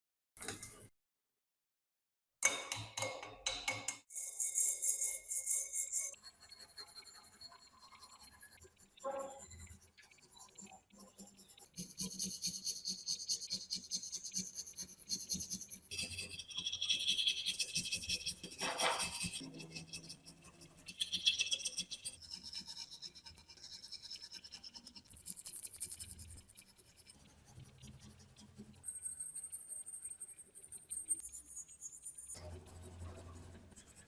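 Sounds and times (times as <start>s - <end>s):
scraping rusty metal: 18.6s - 19.4s.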